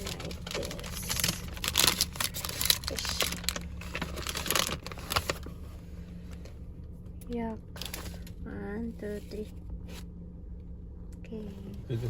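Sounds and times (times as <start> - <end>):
crinkling and rustling: 0.0 - 6.5, 7.7 - 8.4.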